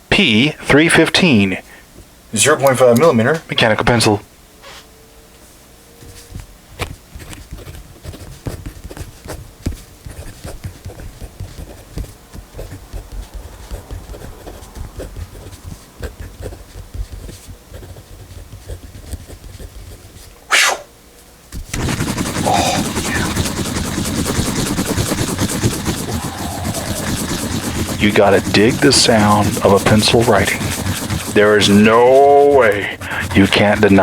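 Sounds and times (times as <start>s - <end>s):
pencil scratching on paper: 7.1s - 20.3s, 21.6s - 34.0s.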